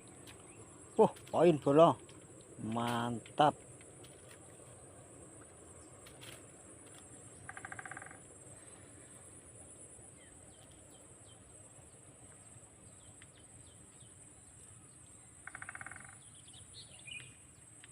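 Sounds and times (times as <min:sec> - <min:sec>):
high-pitched insect buzz: 0:07.0 - 0:08.2, 0:15.4 - 0:16.3.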